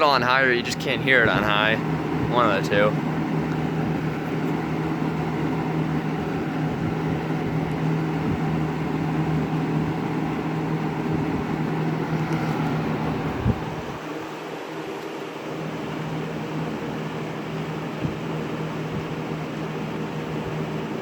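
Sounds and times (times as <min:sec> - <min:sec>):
box fan running: 0:00.0 - 0:21.0.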